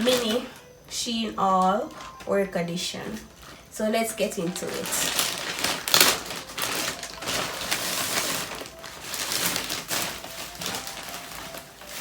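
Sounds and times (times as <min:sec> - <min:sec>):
plastic packaging crinkling: 0:00.0 - 0:00.8, 0:01.4 - 0:12.0.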